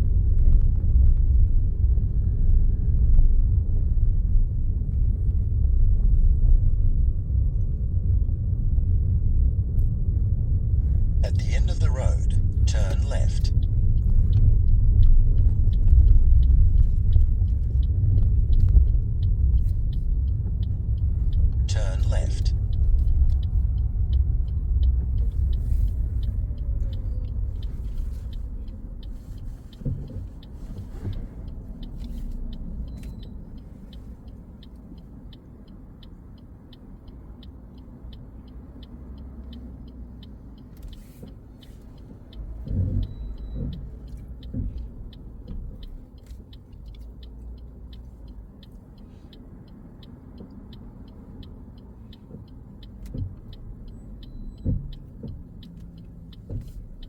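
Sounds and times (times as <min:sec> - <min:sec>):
car cabin engine and road rumble: 0:00.0 - 0:57.0
turn indicator ticking: 0:00.0 - 0:57.0.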